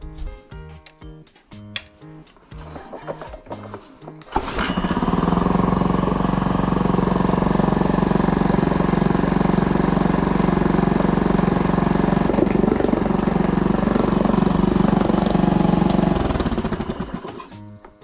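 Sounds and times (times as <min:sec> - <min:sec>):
outboard motor running: 0:04.4 - 0:17.3.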